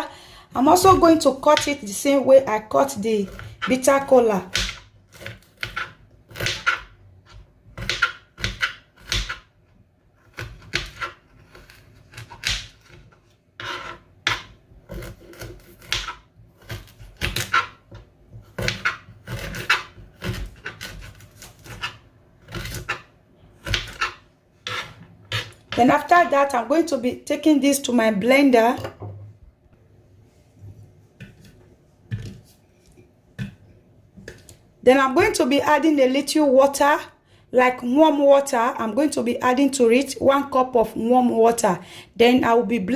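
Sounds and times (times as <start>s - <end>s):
knife chopping on cutting board: 4.5s - 9.5s, 10.2s - 26.0s.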